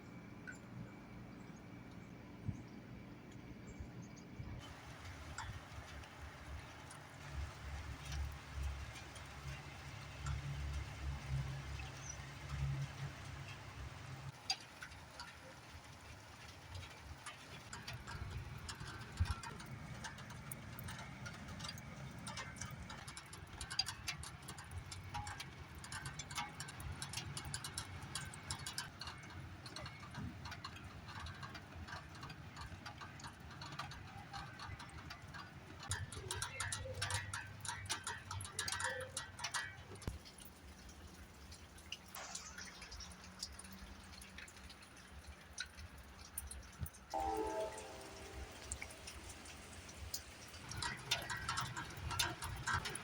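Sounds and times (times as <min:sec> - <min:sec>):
small ticks and taps: 0:16.7 - 0:40.9.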